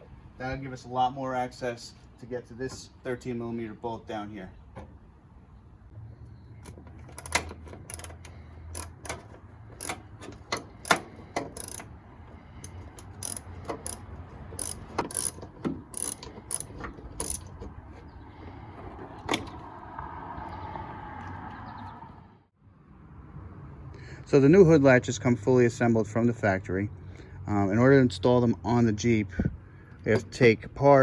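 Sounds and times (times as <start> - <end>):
socket ratchet clicking: 6.6 - 17.6.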